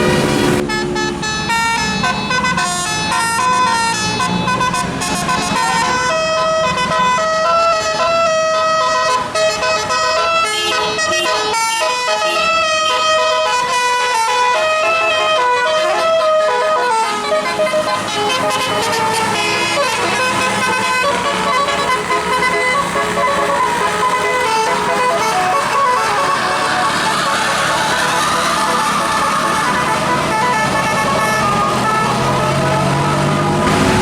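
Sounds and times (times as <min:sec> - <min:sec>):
musical air horn tune: 0:00.0 - 0:34.0
rushing noise: 0:25.3 - 0:34.0.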